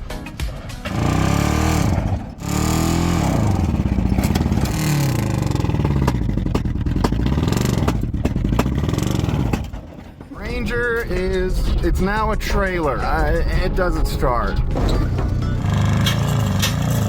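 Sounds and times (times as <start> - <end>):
engine revving roughly: 0.8 - 9.8, 14.7 - 17.0.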